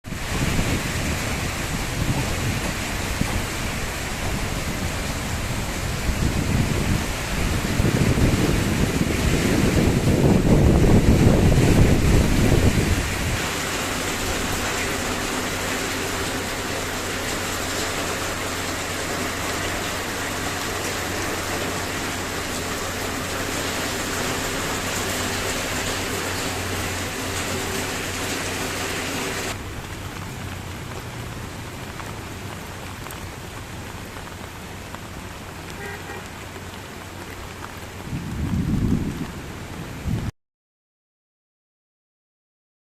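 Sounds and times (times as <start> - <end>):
steady rain hiss: 0.0 - 40.3.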